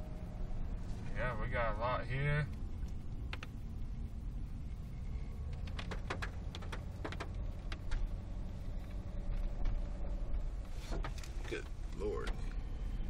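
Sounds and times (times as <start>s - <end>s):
car engine and tyres rumbling: 0.0s - 13.0s
sharp clicks: 2.5s - 3.6s, 5.4s - 8.1s.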